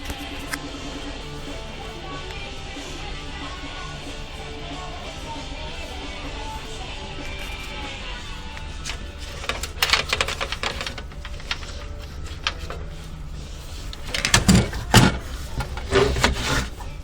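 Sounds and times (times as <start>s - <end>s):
hard objects clicking and knocking: 5.8s - 17.0s.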